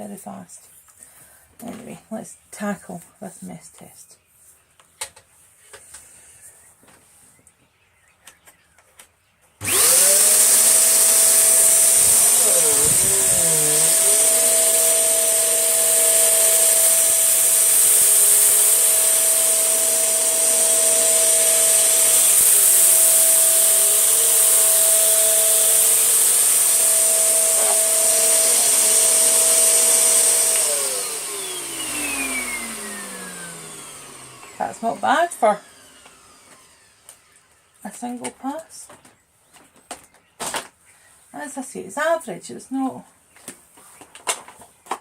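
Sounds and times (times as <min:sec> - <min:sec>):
vacuum cleaner running: 0:09.6 - 0:37.5
vacuum motor winding down: 0:09.6 - 0:37.5.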